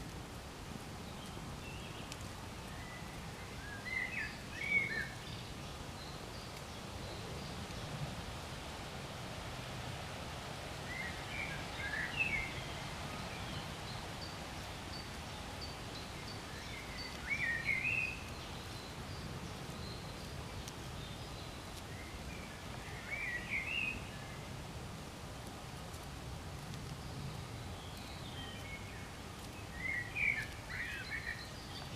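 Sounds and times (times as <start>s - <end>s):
low outdoor background noise: 0.0s - 31.9s
songbird warbling: 29.7s - 31.9s.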